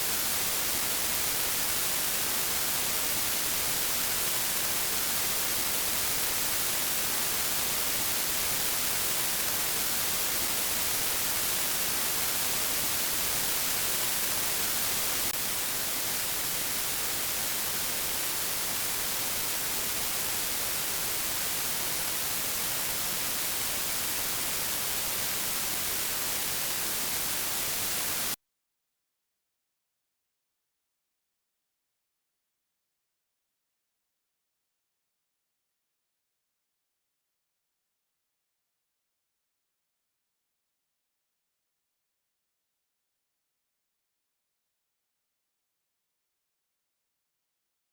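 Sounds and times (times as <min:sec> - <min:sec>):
static hiss: 0:00.0 - 0:28.4.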